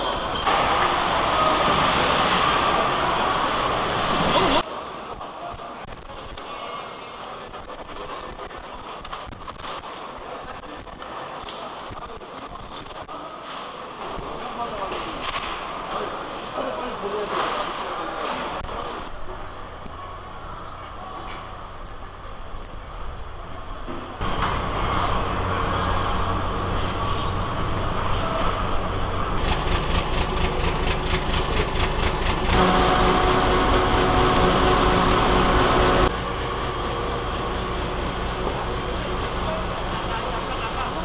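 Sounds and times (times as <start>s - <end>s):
mechanical drone of engines: 19.5s - 41.0s.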